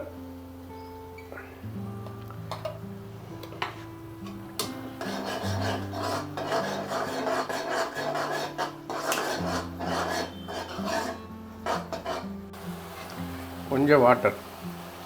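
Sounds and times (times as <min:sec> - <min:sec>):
metal spatula scraping a pan: 0:03.4 - 0:13.5.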